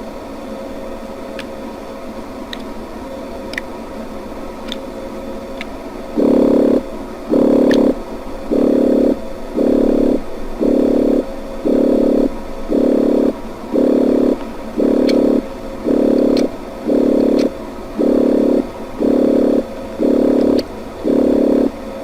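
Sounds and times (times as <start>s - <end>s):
electronic warning beeps: 6.2s - 21.8s.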